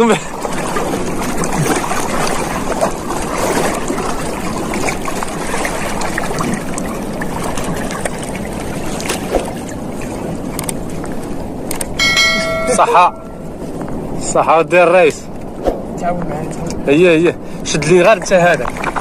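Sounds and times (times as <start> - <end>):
sea water splashing and sloshing: 0.0 - 19.0
small clicks and splashes: 0.4 - 12.0, 18.2 - 19.0.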